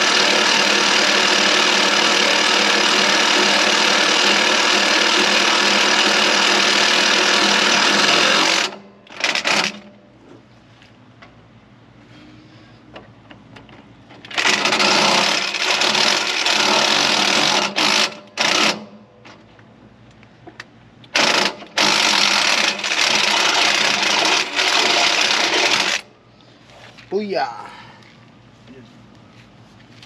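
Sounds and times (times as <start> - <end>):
power drill boring through metal: 0.0 - 9.8, 14.3 - 18.8, 21.2 - 26.0.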